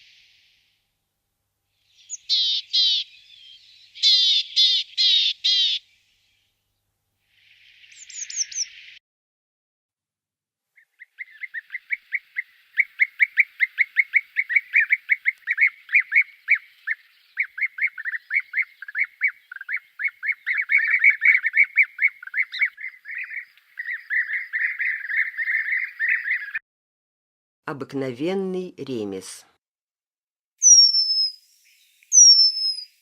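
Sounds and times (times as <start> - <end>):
bird calling rapid downslurred notes: 1.9 - 5.8, 10.8 - 26.6, 30.6 - 33.0.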